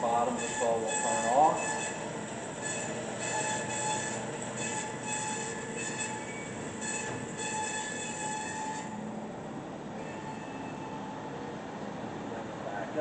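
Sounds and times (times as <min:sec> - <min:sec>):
high ringing blade tones: 0:00.0 - 0:02.0, 0:02.6 - 0:09.0
band saw cutting metal: 0:00.0 - 0:09.0.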